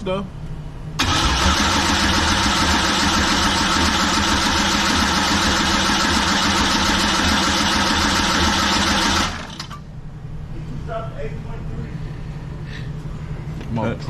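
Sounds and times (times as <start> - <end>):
starter cranking engine: 1.0 - 9.8.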